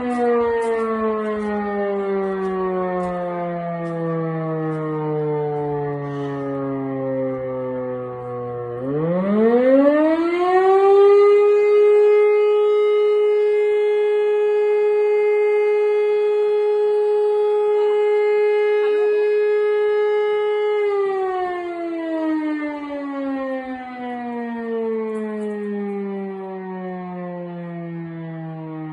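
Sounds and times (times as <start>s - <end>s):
electromechanical siren howling: 0.0s - 28.9s.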